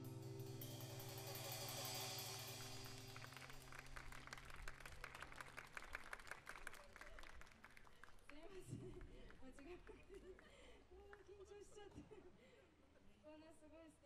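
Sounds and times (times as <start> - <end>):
band chord ringing out: 0.0 - 5.0
audience clapping: 2.9 - 10.5.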